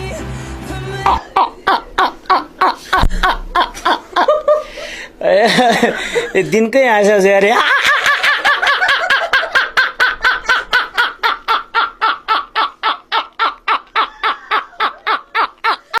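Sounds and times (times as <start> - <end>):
shrill rhythmic laughing: 7.6 - 16.0.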